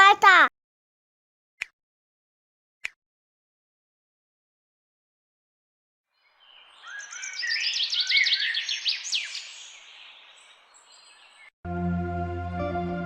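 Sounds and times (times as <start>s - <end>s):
birds chirping: 6.2s - 11.5s.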